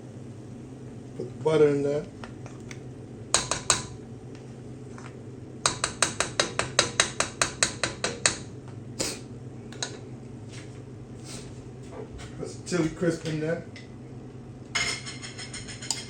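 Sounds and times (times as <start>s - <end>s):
steady low hum: 0.0s - 16.0s
utensil tapping against pot: 3.3s - 4.0s, 5.6s - 8.5s.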